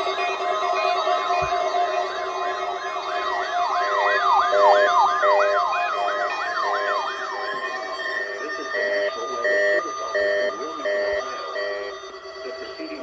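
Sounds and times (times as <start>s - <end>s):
beeping alarms: 0.0s - 13.0s
siren yelping: 3.0s - 12.0s.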